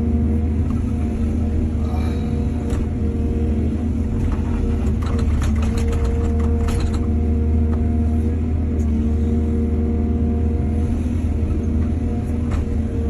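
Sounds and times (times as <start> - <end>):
excavator diesel engine running: 0.0 - 13.0
metallic clanks and rattles: 4.2 - 7.1.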